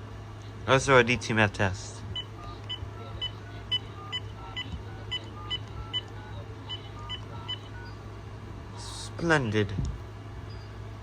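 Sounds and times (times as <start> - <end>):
touch-tone keypad beeps: 2.2 - 8.0.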